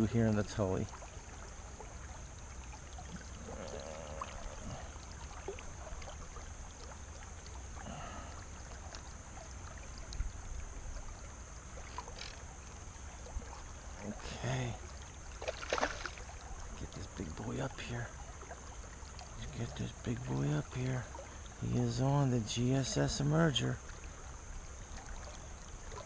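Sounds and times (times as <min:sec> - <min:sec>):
creek water rushing: 0:00.0 - 0:26.0
small water splashes: 0:00.0 - 0:26.0.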